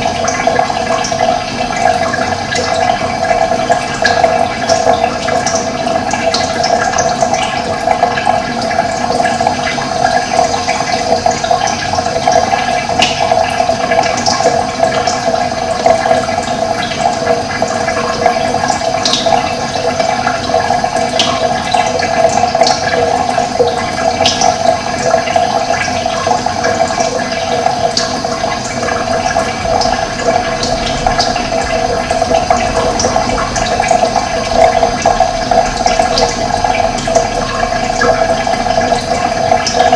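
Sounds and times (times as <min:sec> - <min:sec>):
running water flowing: 0:00.0 - 0:39.9.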